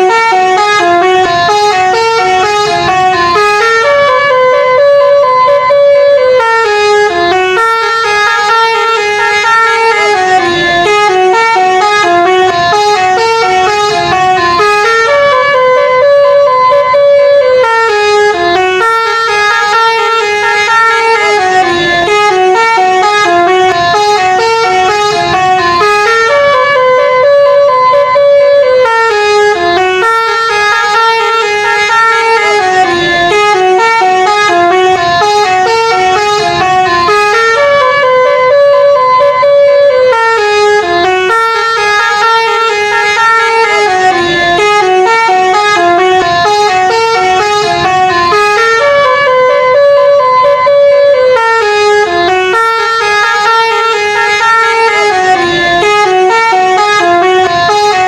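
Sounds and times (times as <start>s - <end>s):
air horns playing a melody: 0.0s - 58.0s.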